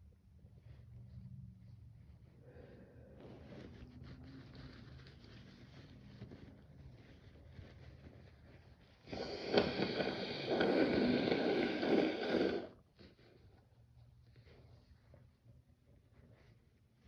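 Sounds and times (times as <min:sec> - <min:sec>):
noisy breath through blocked nose: 0:02.2 - 0:03.7, 0:09.0 - 0:13.2.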